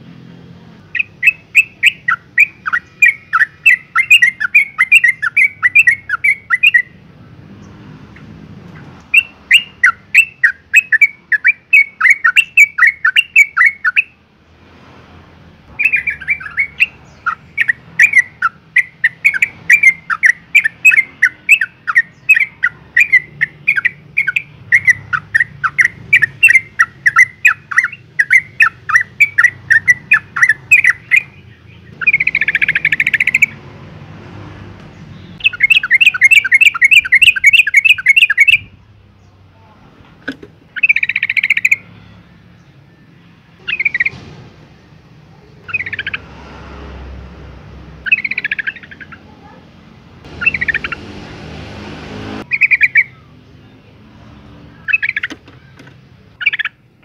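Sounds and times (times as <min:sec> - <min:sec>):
bird chattering calls: 0:00.9 - 0:07.0, 0:08.1 - 0:14.2, 0:15.7 - 0:33.6, 0:35.1 - 0:38.8, 0:40.3 - 0:41.9, 0:43.6 - 0:44.2, 0:45.4 - 0:46.3, 0:48.0 - 0:49.6, 0:50.2 - 0:51.5, 0:52.4 - 0:53.2, 0:54.8 - 0:56.9
harsh bird buzzing: 0:50.2 - 0:53.0.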